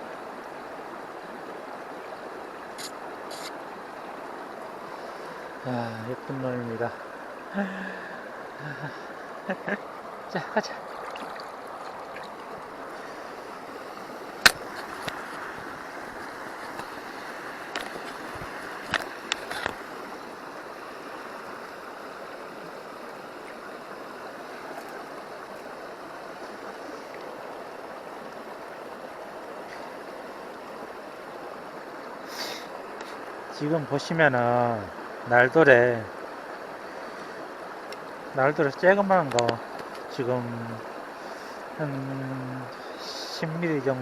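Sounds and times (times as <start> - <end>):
stream rushing: 0.0 - 44.0
sharp clicks or knocks: 14.4 - 15.4.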